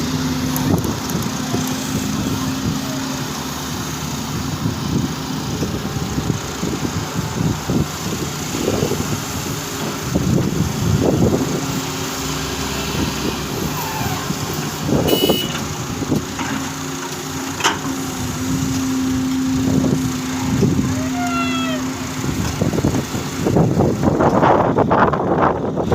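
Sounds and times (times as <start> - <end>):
excavator engines and hydraulics: 0.0 - 25.9
high squeal: 12.7 - 15.4.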